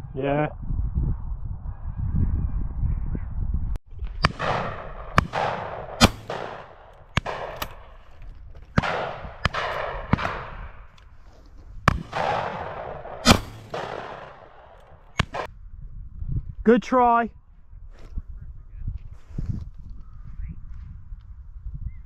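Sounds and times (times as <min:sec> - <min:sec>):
echoing shotgun shots: 0:04.2 - 0:11.0, 0:11.9 - 0:15.5.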